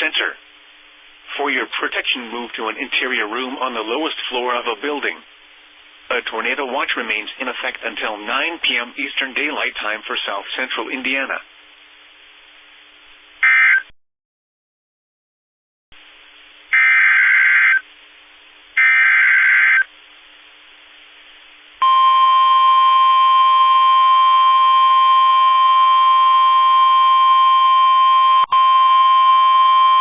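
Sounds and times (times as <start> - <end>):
steady warning alarm tone: 16.7 - 17.8, 18.8 - 19.9, 21.8 - 30.0
screeching digital data bursts: 16.8 - 17.8, 18.8 - 19.9.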